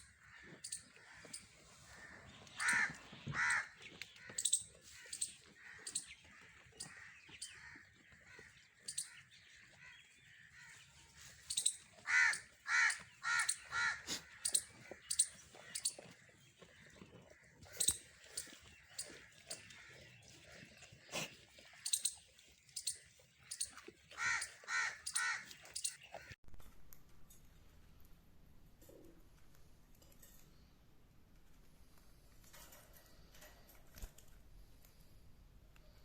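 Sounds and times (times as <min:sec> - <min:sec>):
bird harsh calls: 0:00.0 - 0:16.1, 0:17.6 - 0:20.2, 0:22.8 - 0:26.4.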